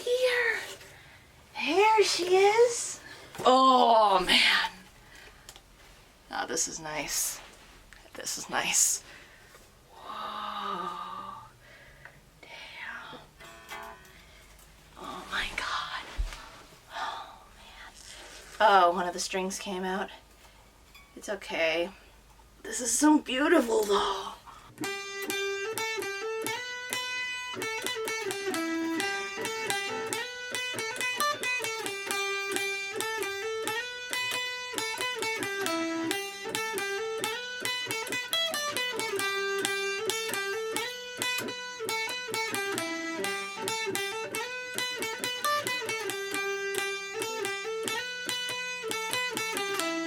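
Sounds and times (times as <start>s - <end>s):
picked guitar melody: 13.3s - 15.0s, 24.7s - 50.0s.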